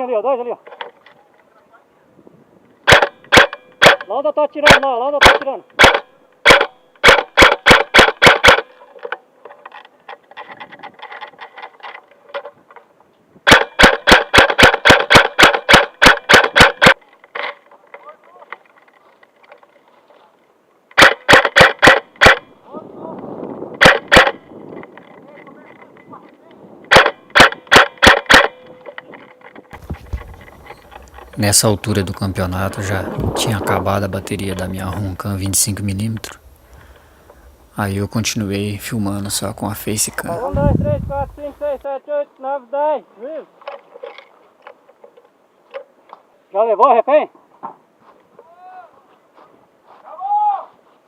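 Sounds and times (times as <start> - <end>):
airsoft gun shots: 2.9 - 4.1, 4.7 - 8.7, 13.5 - 17.0, 21.0 - 22.5, 23.8 - 24.4, 26.9 - 28.6, 29.8 - 32.1.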